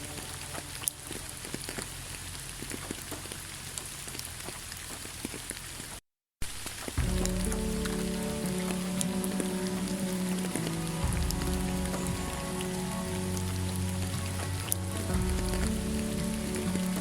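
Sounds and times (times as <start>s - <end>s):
soft music with low held tones: 0.0s - 2.1s, 6.8s - 17.0s
steady rain falling: 0.0s - 17.0s.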